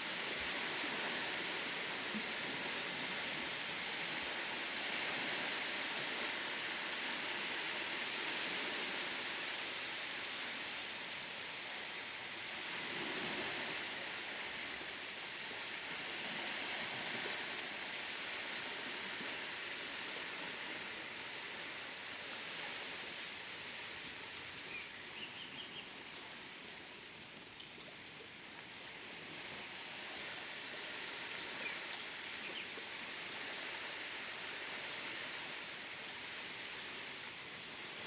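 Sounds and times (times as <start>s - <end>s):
waves washing: 0.0s - 38.0s
faint bird chirps: 24.6s - 26.1s, 31.6s - 32.8s.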